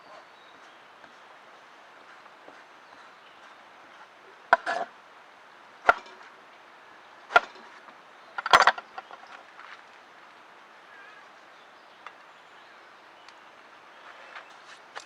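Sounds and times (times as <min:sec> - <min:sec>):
axe chopping wood: 0:05.9 - 0:06.2, 0:07.3 - 0:07.7, 0:08.4 - 0:09.2.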